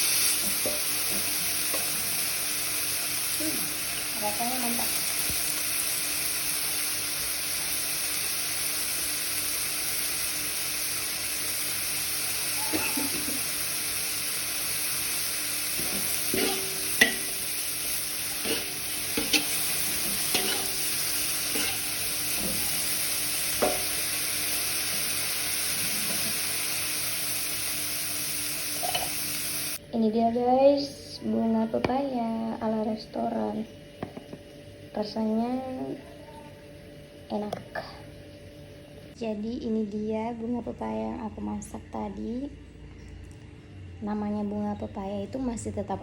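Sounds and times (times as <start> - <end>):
flowers sizzling in a pan: 0.0 - 29.8
utensil clinking against pan: 18.4 - 20.8.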